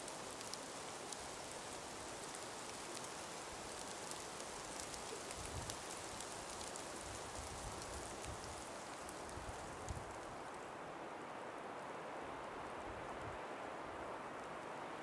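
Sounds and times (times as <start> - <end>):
tiny ticks: 0.0 - 10.6
breeze hiss through forest: 0.0 - 15.0.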